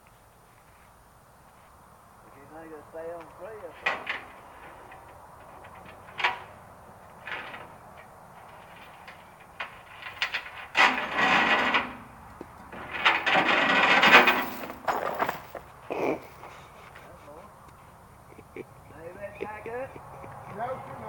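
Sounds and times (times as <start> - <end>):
wood cracking and scraping: 3.8 - 12.0, 12.7 - 15.8.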